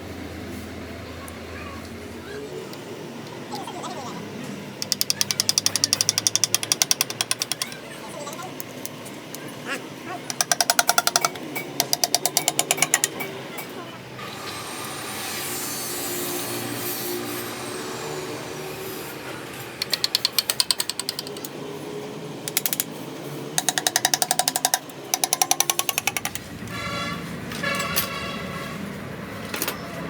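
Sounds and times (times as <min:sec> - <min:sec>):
workshop noise: 0:00.0 - 0:30.0
power tool hammering: 0:04.8 - 0:07.8, 0:10.3 - 0:21.6, 0:22.4 - 0:28.3.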